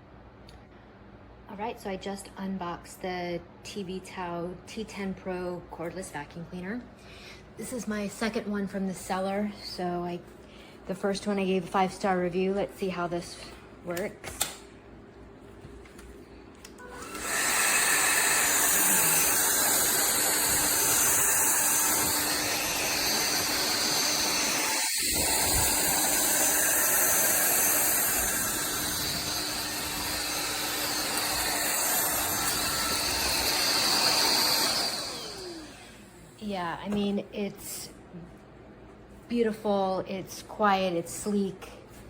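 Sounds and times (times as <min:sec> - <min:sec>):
stick vacuum running: 0:16.6 - 0:36.4.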